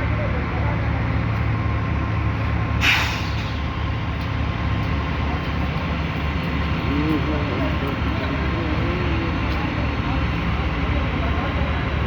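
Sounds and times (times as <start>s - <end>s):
diesel engine running: 0.0s - 12.0s
air hiss: 2.8s - 3.6s.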